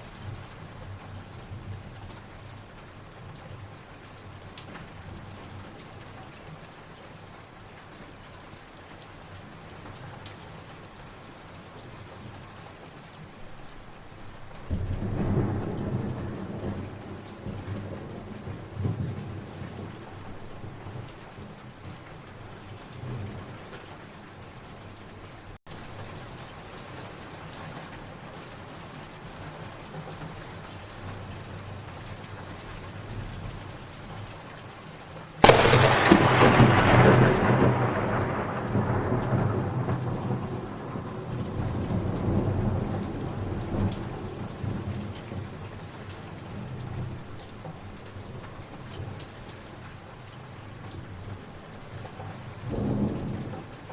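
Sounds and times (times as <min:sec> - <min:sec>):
steady rain: 0:00.0 - 0:53.9
thunderclap rolling rumble: 0:35.4 - 0:44.3.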